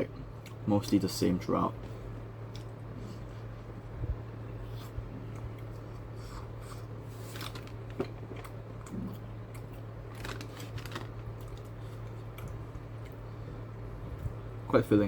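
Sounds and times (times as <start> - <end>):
low steady hum: 0.0 - 15.0
chewing with wet mouth clicks: 8.4 - 9.9.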